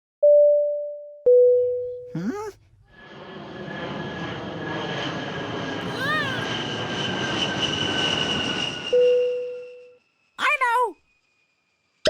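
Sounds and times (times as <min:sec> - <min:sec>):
loud steady tone: 0:08.9 - 0:10.8.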